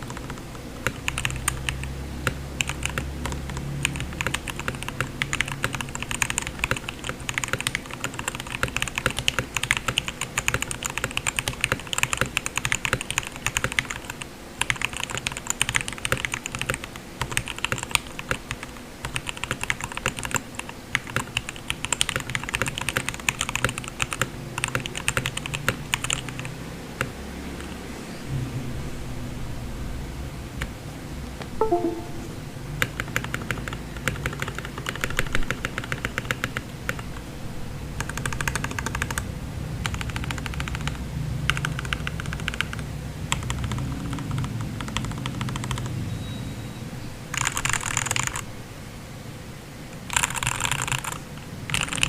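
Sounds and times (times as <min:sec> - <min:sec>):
mechanical keyboard typing: 0:00.0 - 0:27.7, 0:32.9 - 0:37.1, 0:38.0 - 0:39.2, 0:39.8 - 0:45.9, 0:47.4 - 0:48.5, 0:50.0 - 0:52.0
low hum: 0:31.6 - 0:32.9.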